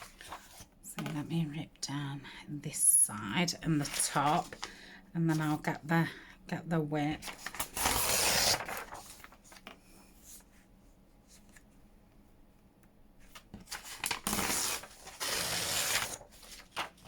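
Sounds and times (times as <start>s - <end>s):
paper tearing: 7.3s - 9.3s, 13.7s - 17.0s.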